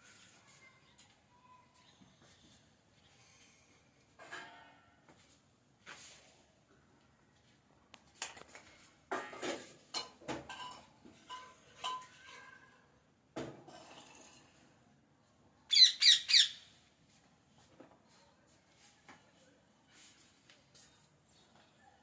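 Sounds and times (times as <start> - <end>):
parrot chattering: 15.7 - 16.7
parrot squawking harshly: 15.7 - 16.7.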